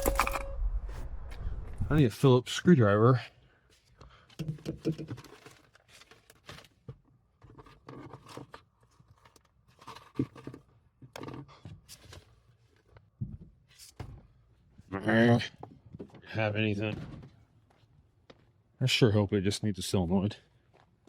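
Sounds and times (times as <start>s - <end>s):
tools clicking and clattering: 0.0s - 0.5s.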